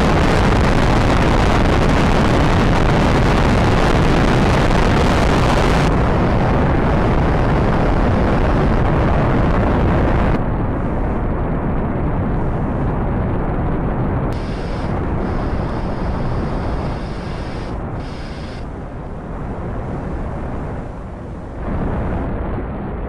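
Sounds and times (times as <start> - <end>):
rocket engine rumbling: 14.3 - 22.8.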